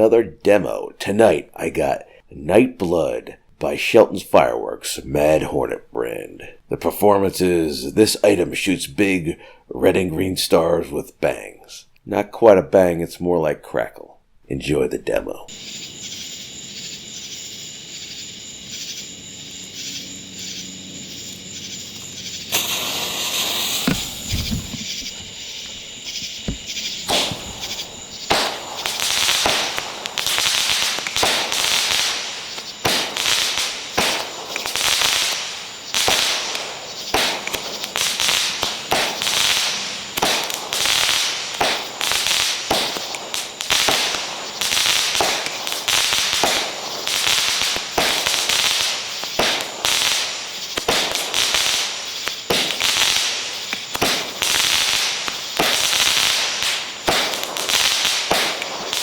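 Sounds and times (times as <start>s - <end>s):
firework launch reports: 14.7s - 59.0s
crackling firework stars: 15.5s - 59.0s.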